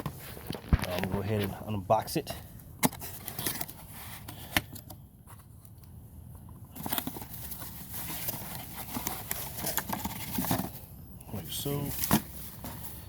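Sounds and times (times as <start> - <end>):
packaging rustling and crinkling: 0.0 - 1.6, 6.5 - 13.0.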